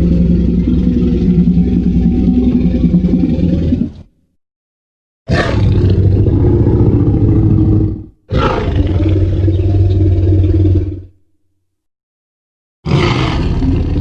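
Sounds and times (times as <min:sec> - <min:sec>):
deep dinosaur roar: 0:00.0 - 0:04.1, 0:05.3 - 0:11.2, 0:12.9 - 0:14.0.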